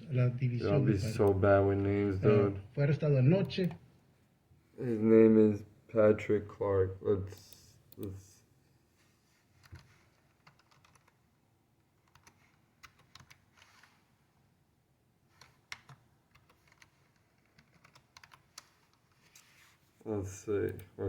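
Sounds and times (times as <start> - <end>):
typing on computer keyboard: 9.6 - 14.0, 15.3 - 19.1.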